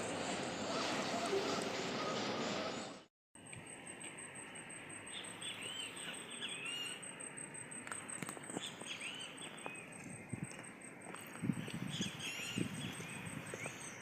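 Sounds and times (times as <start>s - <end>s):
small birds chirping: 5.1s - 7.1s, 8.1s - 14.0s.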